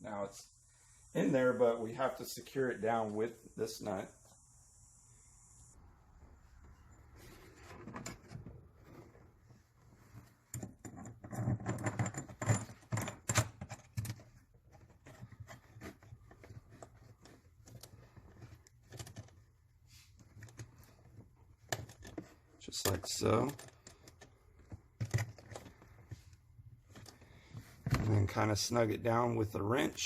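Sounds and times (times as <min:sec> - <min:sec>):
metal nut clicking and rattling: 0:10.5 - 0:15.2.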